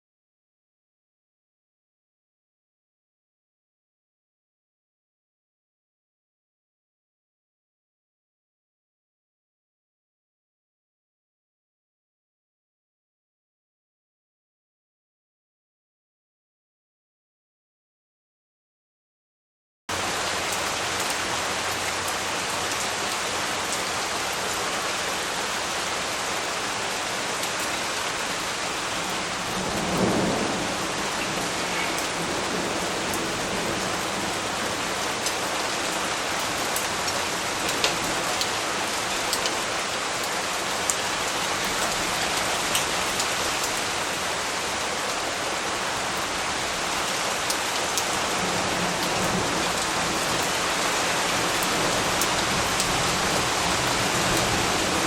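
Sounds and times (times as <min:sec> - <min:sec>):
rain falling on leaves: 0:19.9 - 0:55.0.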